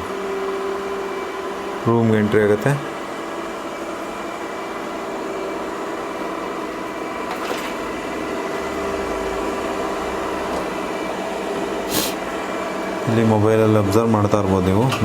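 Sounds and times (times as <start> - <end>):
robot vacuum running: 7.9 - 15.0.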